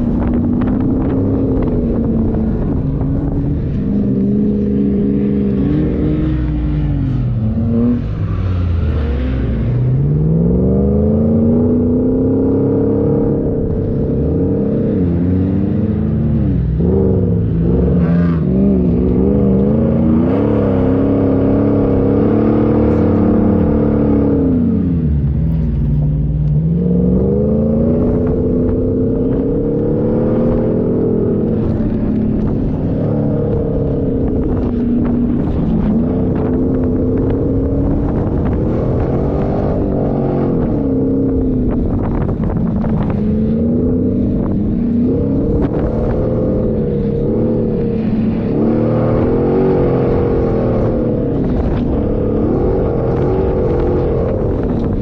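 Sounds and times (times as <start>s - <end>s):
vehicle engine accelerating: 0.0s - 55.0s.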